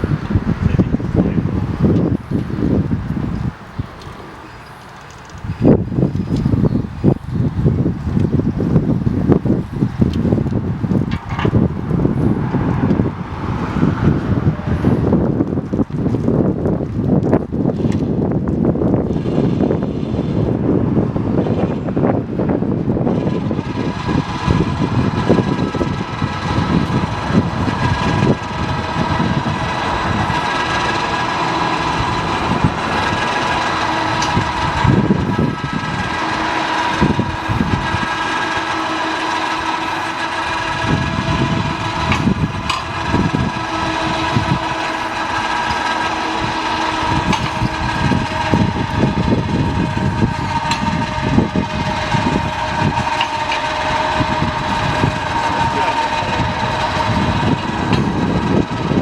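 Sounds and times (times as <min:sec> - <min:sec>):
sawmill engine low rumble: 0:00.0 - 0:59.0
sawmill high whine: 0:00.0 - 0:59.0
sawmill knocks: 0:26.4 - 0:58.8.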